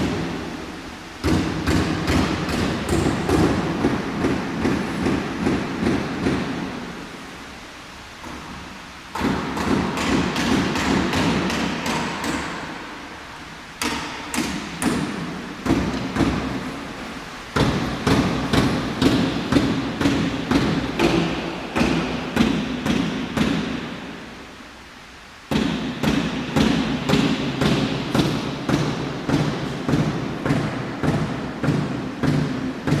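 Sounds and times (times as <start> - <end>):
cnc router knocking: 1.2 - 6.7, 17.6 - 23.9, 25.5 - 33.0.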